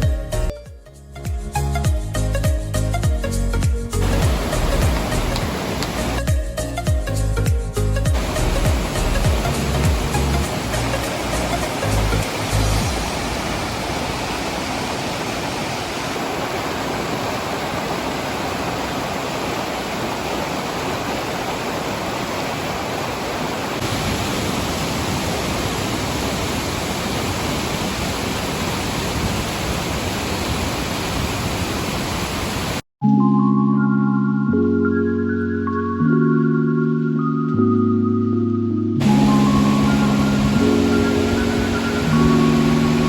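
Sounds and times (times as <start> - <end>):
background music: 0.0 - 13.1, 33.0 - 43.0
waterfall roaring: 4.0 - 6.2, 8.2 - 32.8, 39.0 - 43.0.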